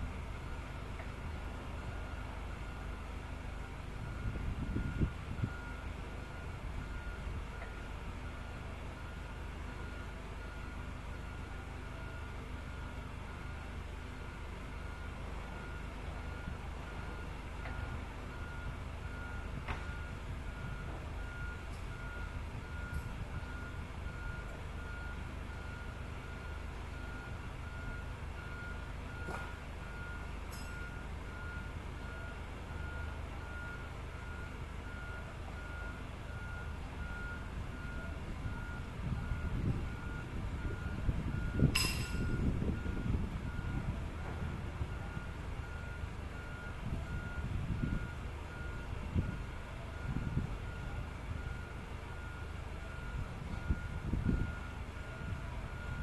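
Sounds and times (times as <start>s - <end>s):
low machinery rumble: 0.0s - 56.0s.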